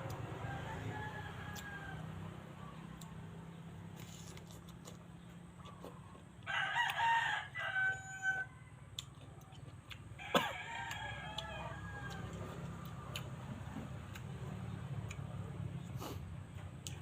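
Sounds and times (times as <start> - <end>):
rooster crowing: 0.1 - 3.1, 6.4 - 9.0, 10.2 - 12.9.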